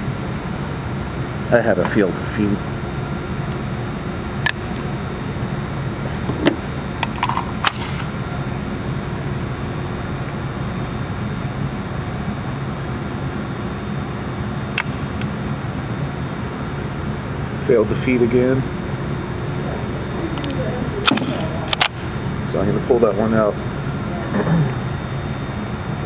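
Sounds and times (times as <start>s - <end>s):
steady low hum: 0.0s - 26.0s
sharp clicks and knocks: 20.4s - 22.1s.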